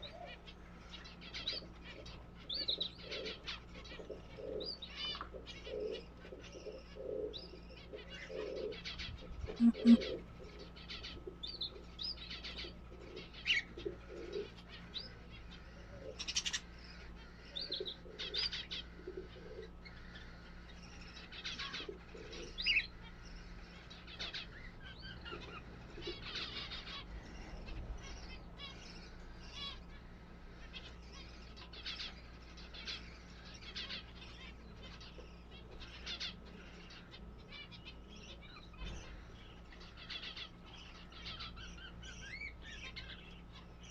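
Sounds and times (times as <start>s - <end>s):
faint steady hum: 0.0s - 43.9s
pigeons cooing: 0.0s - 43.9s
short high chirps: 9.6s - 10.0s.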